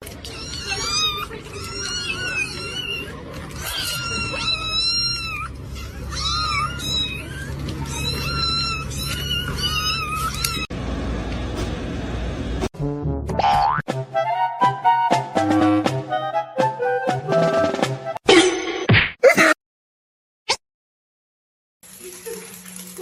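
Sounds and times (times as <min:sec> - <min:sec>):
cat meowing: 0:00.2 - 0:10.7.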